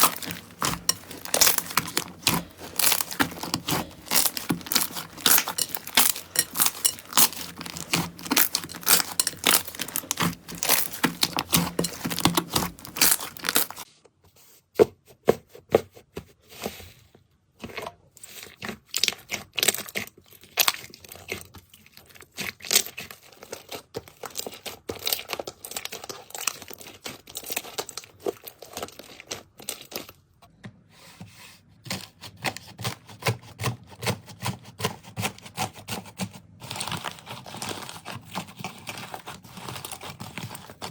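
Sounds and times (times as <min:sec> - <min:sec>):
slime crackling and popping: 0:00.0 - 0:13.8.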